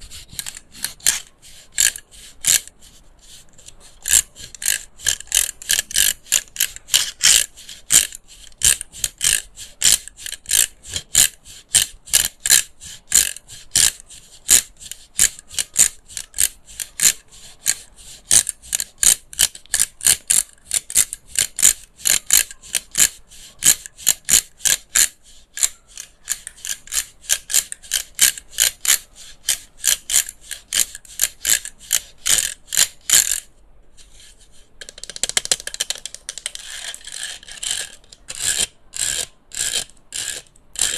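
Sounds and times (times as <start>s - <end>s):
soft rustle: 24.6s - 34.9s
tapping and scratching on plastic: 34.8s - 38.6s.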